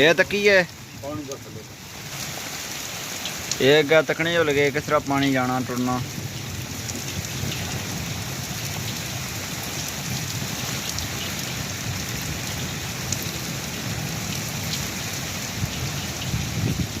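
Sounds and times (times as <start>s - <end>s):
heavy rain pouring: 0.0s - 17.0s
gusty wind: 6.0s - 17.0s.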